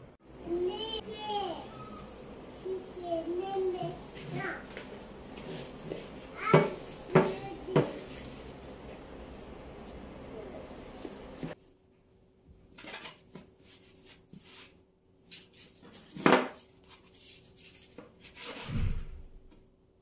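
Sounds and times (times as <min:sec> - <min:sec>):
utensils and cookware rubbing: 0:00.7 - 0:11.6
dull thump: 0:18.7 - 0:19.4.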